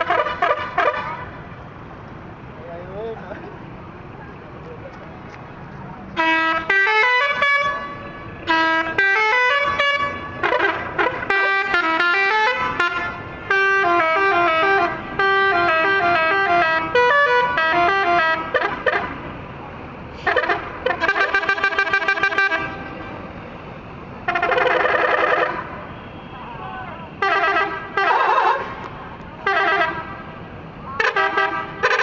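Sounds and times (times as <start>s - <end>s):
bus air horns playing tunes: 0.0s - 1.3s, 6.2s - 19.2s, 20.1s - 23.3s, 24.2s - 28.8s, 29.4s - 30.4s, 31.0s - 32.0s.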